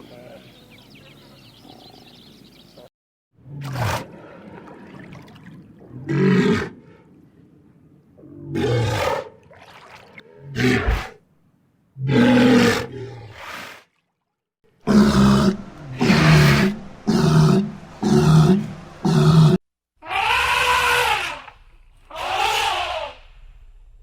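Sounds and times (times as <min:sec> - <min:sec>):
wild animal roaring calls: 0:14.8 - 0:21.5.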